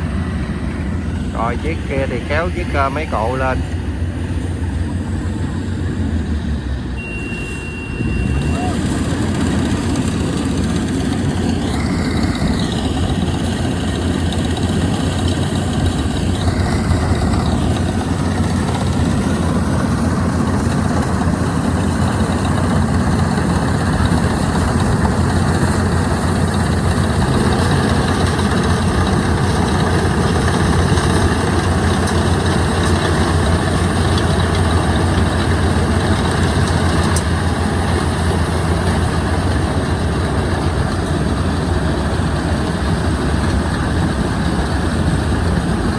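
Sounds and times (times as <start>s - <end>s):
diesel engine running hard: 0.0s - 45.9s
high-pitched squeals: 7.0s - 9.4s.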